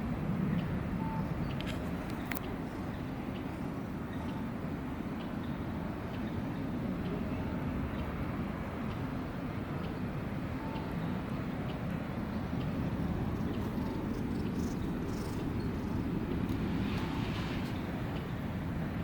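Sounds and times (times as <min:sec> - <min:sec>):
steady low rumble: 0:06.7 - 0:19.0.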